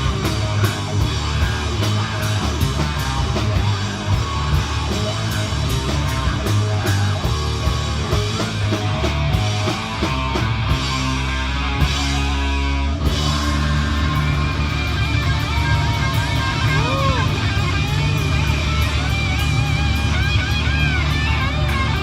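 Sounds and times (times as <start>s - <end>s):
rock music: 0.0s - 22.0s.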